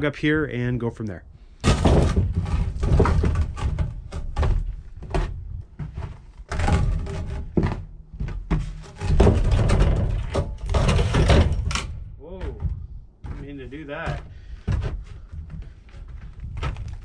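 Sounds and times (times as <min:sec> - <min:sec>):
log thudding on steel bed: 0:01.6 - 0:11.9.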